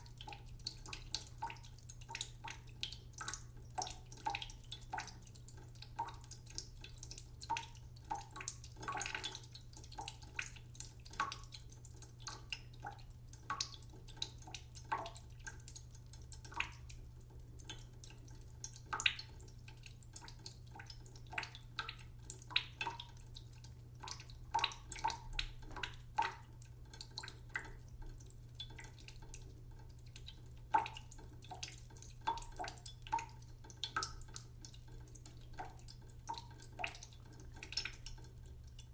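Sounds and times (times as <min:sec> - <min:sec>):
water dripping into a pot: 0:00.0 - 0:38.9.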